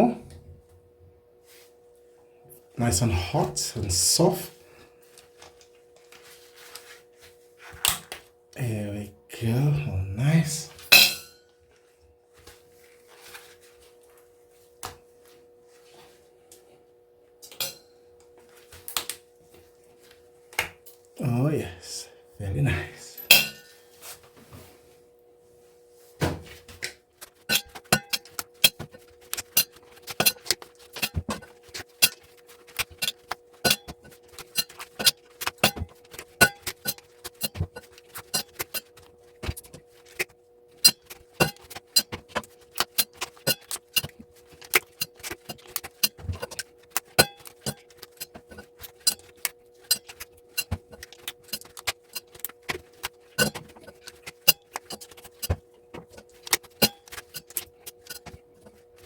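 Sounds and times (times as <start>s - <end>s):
faint steady hum: 0.0s - 59.0s
hand tools clicking on plastic: 27.2s - 58.8s.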